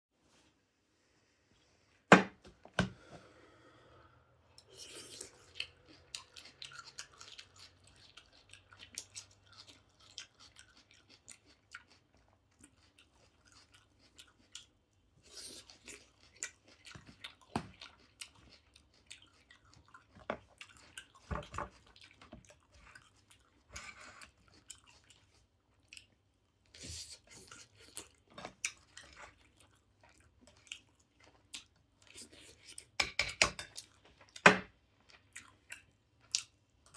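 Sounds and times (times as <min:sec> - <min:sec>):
person chewing and crunching food: 0:04.6 - 0:33.0, 0:33.6 - 0:36.9.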